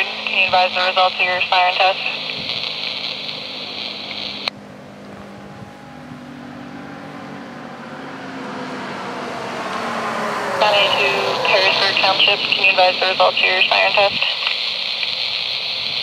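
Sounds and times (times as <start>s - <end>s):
radio squelch click: 0.0s - 4.5s, 10.6s - 16.0s
scanner radio hissing: 0.0s - 4.5s, 10.6s - 16.0s
low steady background hum: 0.0s - 5.9s, 10.6s - 15.4s.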